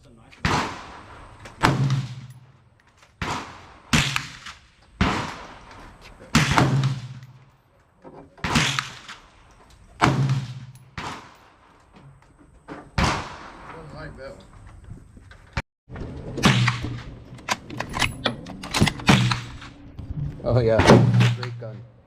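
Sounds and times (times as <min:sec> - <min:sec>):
gunshots with echo: 0:00.4 - 0:02.4, 0:03.2 - 0:05.7, 0:06.3 - 0:07.4, 0:08.4 - 0:09.3, 0:16.4 - 0:17.2, 0:18.9 - 0:19.8.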